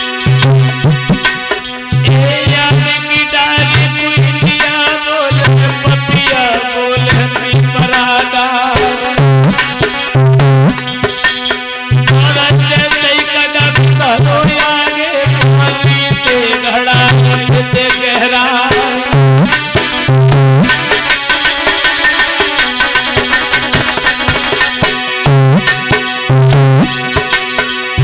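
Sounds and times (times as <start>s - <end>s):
hand drum rhythm: 0.1s - 28.0s
wavering melodic instrument: 19.4s - 26.3s.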